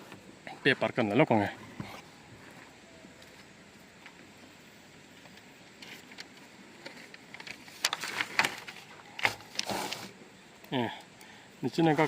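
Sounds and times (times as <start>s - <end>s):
low background hiss: 0.0s - 12.0s
handling rustling with clicks: 3.1s - 11.2s.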